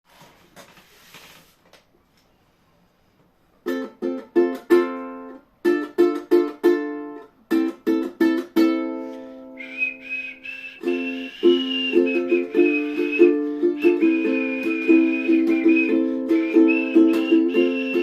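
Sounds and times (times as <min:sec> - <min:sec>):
person whistling a high note: 0:09.4 - 0:18.0.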